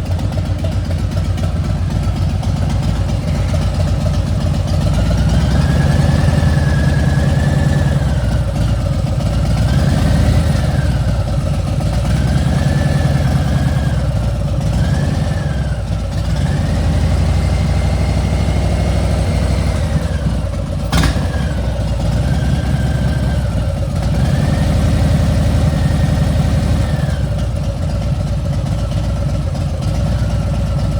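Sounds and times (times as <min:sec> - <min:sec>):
high engine whine: 0:00.0 - 0:14.4
motorcycle engine revving: 0:00.0 - 0:30.9.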